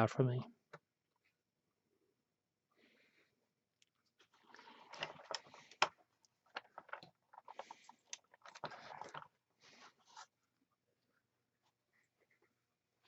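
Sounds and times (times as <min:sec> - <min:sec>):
handling clicks and rustles: 0:03.8 - 0:10.4.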